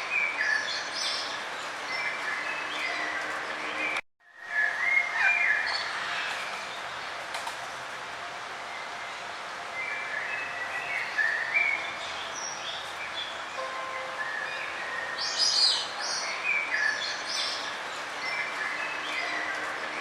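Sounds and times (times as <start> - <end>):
songbird chirping: 9.8 - 20.0.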